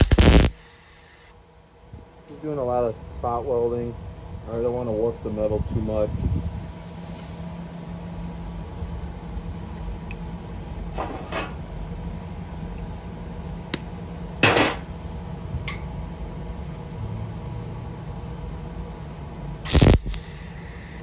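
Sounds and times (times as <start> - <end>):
welding bursts: 0.0 - 1.3, 4.6 - 14.9, 19.7 - 21.0
steady machine hum: 0.0 - 21.0.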